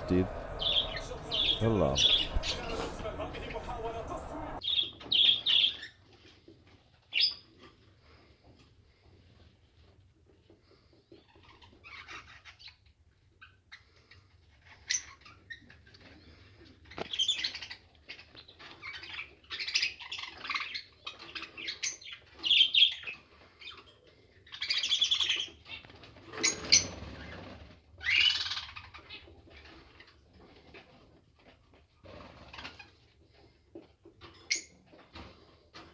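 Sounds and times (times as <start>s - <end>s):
birds chirping: 0.0s - 4.8s.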